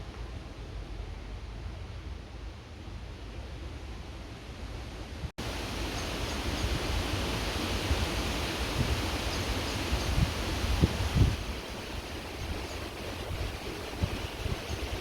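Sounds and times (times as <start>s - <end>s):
creek water running: 5.4s - 15.0s
wind buffeting microphone: 6.2s - 15.0s.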